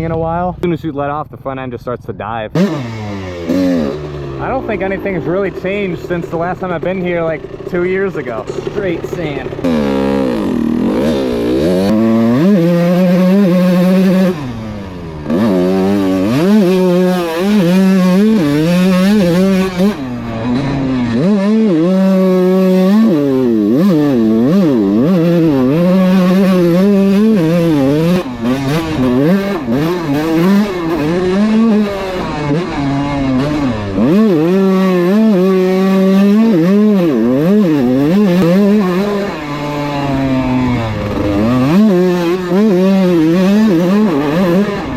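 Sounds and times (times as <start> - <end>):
dirt bike engine revving: 2.4 - 44.9.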